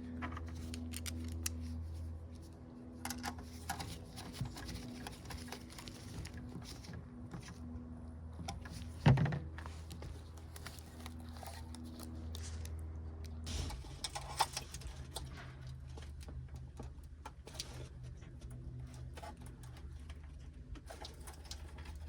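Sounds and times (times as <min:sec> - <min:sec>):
steady low hum: 0:00.0 - 0:22.0
parts and tools clicking: 0:00.2 - 0:01.8.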